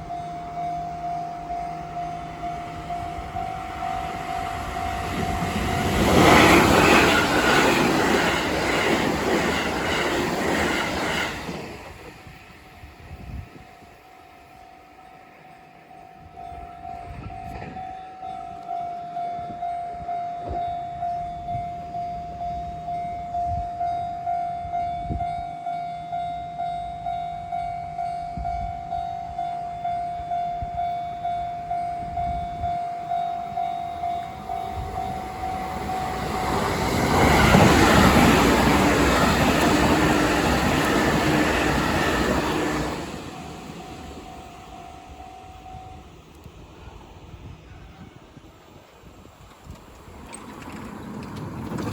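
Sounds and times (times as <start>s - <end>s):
train wheels rolling: 1.4s - 14.7s, 33.4s - 46.6s, 49.0s - 51.9s.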